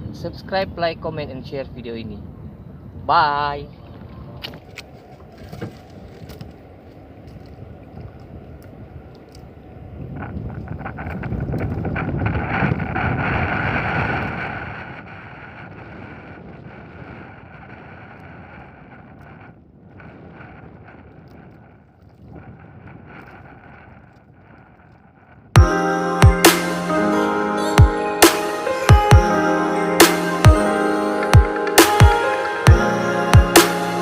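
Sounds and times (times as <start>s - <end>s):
wind buffeting microphone: 0.0s - 25.6s.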